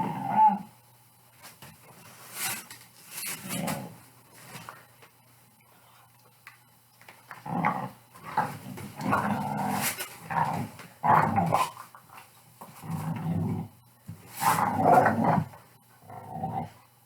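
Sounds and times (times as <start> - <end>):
dog play-growling: 3.3 - 4.0, 7.3 - 13.7, 14.4 - 16.8.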